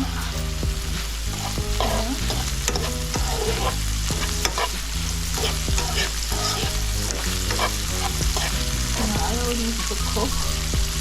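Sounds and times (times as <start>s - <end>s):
vegetables sizzling in a frying pan: 0.1s - 11.0s
utensil scraping a pan: 1.4s - 9.2s.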